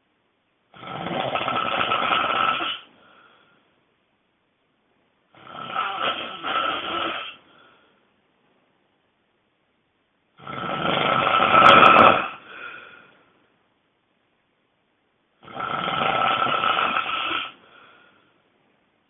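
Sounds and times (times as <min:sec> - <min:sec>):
person snoring loudly: 0:00.7 - 0:02.9, 0:05.3 - 0:07.4, 0:10.4 - 0:12.7, 0:15.4 - 0:17.6.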